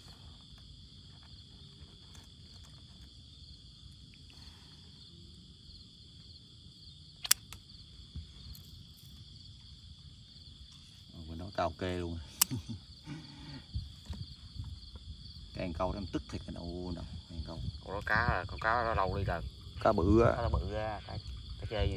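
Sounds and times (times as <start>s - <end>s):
insects trilling: 0.0s - 21.9s
sharp click: 7.2s - 7.6s, 12.3s - 12.7s.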